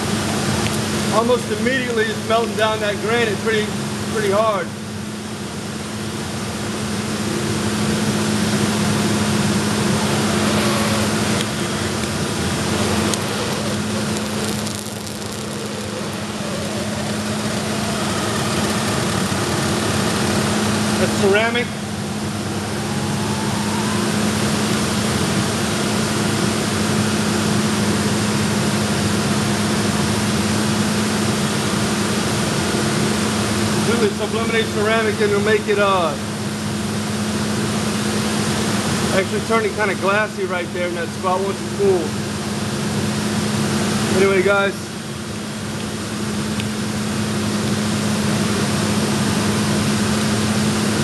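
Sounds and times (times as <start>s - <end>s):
steady low hum: 0.0s - 51.0s
torch flame hissing: 5.1s - 35.6s.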